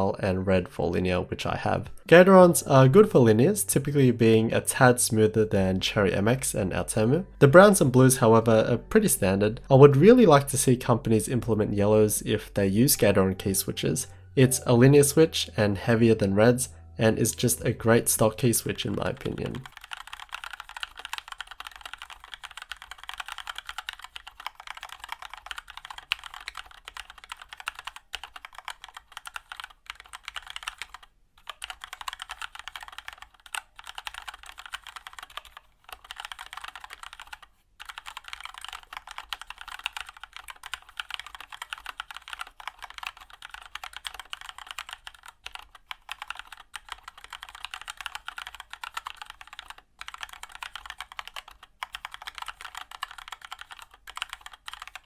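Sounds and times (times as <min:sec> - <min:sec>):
mechanical keyboard typing: 0:17.3 - 0:55.0.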